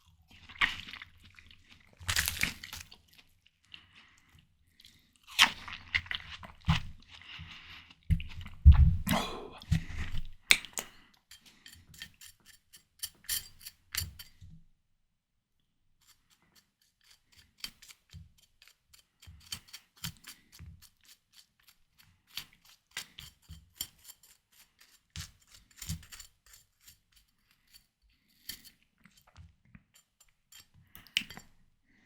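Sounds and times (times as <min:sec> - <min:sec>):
chewing juicy watermelon: 0:00.3 - 0:04.2, 0:04.9 - 0:08.7.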